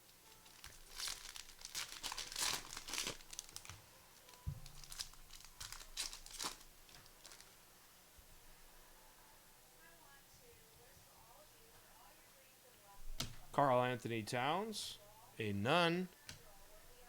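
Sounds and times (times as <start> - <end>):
plastic wrappers crinkling and tearing: 0.2 - 7.6.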